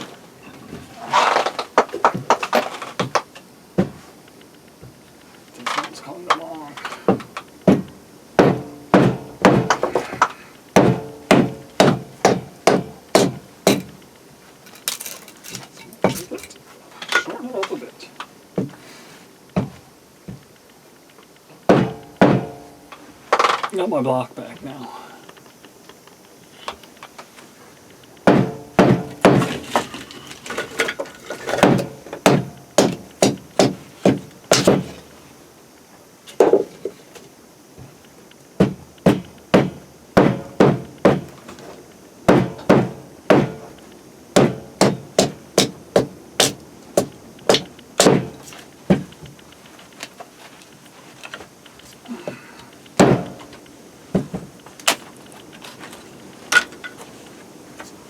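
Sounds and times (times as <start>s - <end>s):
axe chopping wood: 7.1s - 10.2s, 10.8s - 13.9s, 21.7s - 22.6s, 28.2s - 30.6s, 31.2s - 35.0s, 38.6s - 41.4s, 42.3s - 43.7s, 44.4s - 49.1s, 53.0s - 53.5s.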